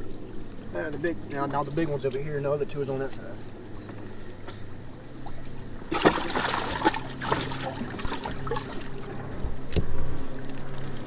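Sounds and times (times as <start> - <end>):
fish splashing in water: 5.7 - 9.4.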